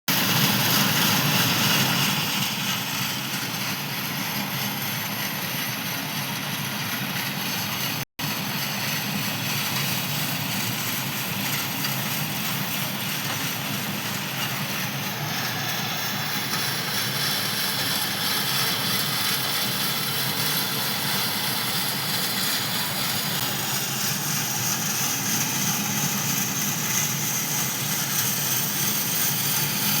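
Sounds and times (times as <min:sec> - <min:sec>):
excavator engine running: 0:09.0 - 0:27.9.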